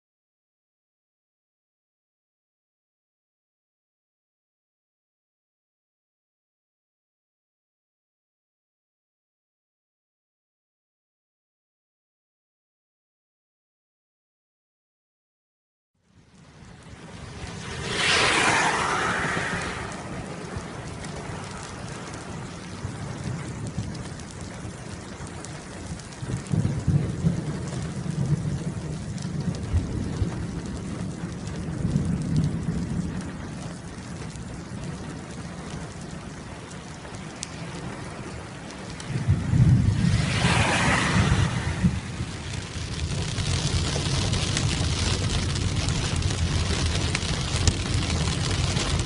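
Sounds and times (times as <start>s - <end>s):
steady rain: 16.0s - 49.0s
thunder rolling: 16.5s - 49.0s.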